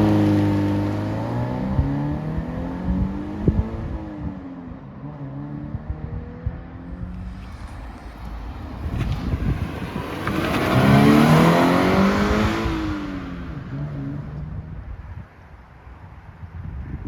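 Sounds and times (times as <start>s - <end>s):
car accelerating past: 6.6s - 14.8s.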